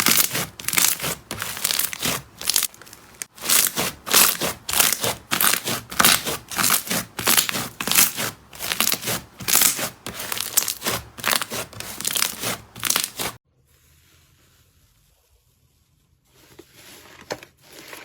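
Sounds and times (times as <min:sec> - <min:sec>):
slime crackling when squeezed: 0:01.6 - 0:08.1, 0:10.4 - 0:13.2.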